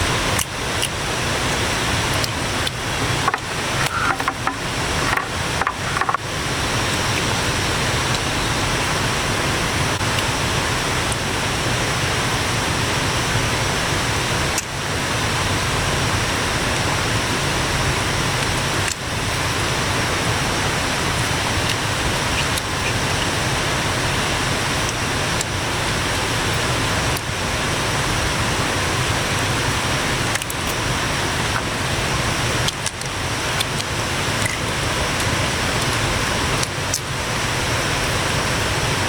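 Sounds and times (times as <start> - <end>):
water rushing: 0.0 - 39.0.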